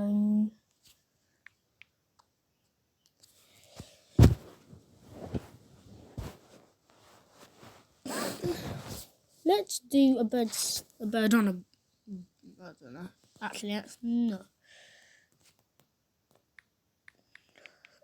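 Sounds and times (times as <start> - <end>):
rustling handling noise: 3.4 - 8.0
faint ticks: 16.6 - 18.0.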